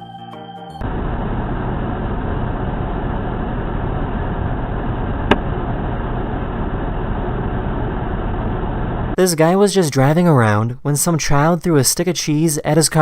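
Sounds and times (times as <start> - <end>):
organ music: 0.0 - 0.8
car road and engine noise: 0.8 - 9.2.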